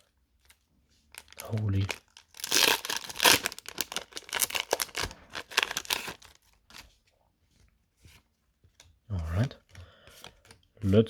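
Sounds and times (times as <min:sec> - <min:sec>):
foil wrapper crinkling and tearing: 0:00.4 - 0:06.9.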